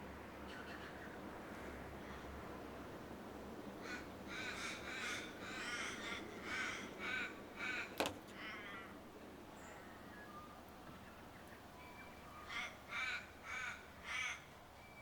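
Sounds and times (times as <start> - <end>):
bird cawing: 3.8 - 8.9, 12.4 - 14.5.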